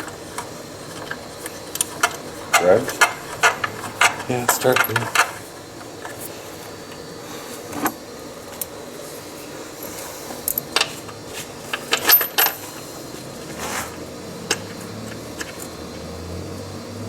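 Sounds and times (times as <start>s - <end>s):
metallic clinks of hand tools: 2.0s - 5.3s.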